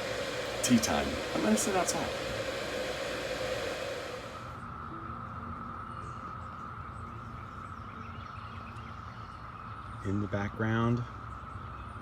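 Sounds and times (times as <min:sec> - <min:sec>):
broad hiss: 0:00.0 - 0:04.6.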